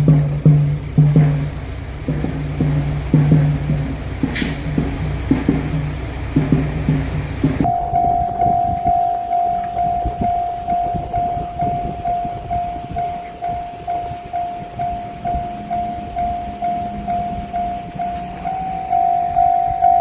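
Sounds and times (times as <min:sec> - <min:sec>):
train rumbling past: 0:00.0 - 0:20.0
level-crossing alarm bell ringing: 0:04.6 - 0:20.0.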